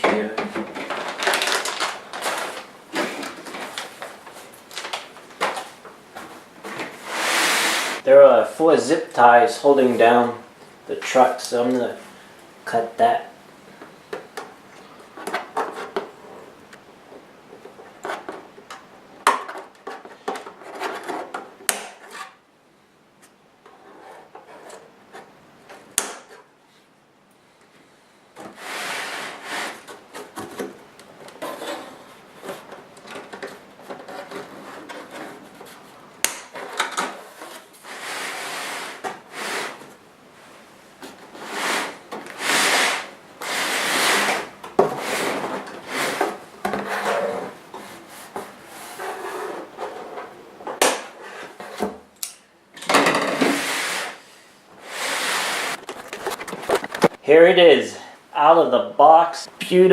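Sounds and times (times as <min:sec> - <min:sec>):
cardboard and plastic scraping: 0:00.0 - 0:08.0, 0:17.6 - 0:22.4, 0:28.4 - 0:40.0, 0:41.0 - 0:52.1, 0:54.8 - 0:57.2.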